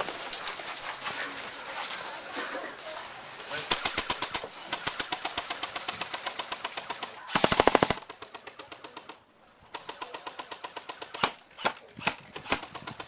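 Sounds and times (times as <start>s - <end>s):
airsoft guns firing full auto: 3.6s - 13.0s.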